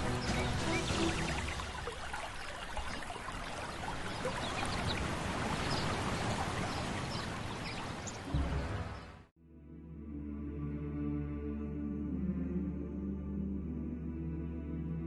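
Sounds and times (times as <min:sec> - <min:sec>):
running water trickling and splashing: 0:00.0 - 0:08.4.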